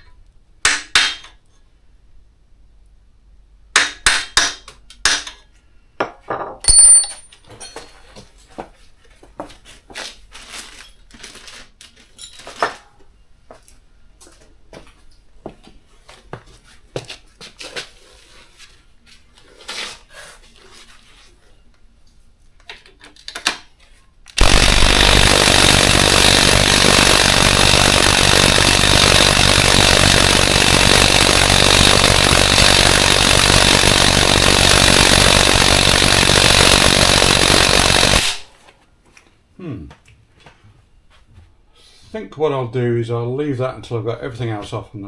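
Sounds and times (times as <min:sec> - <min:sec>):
impact driver hammering: 0:00.7 - 0:01.3, 0:03.8 - 0:05.4, 0:24.4 - 0:38.5.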